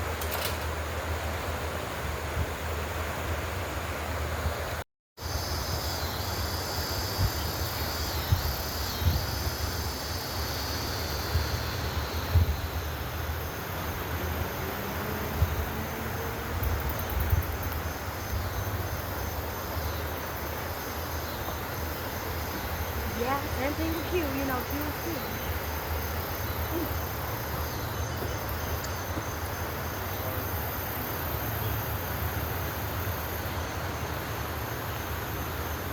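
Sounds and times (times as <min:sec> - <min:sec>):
insects droning: 0:00.0 - 0:35.9
wind rumble on microphone: 0:07.1 - 0:09.9, 0:11.2 - 0:13.4, 0:15.0 - 0:18.9.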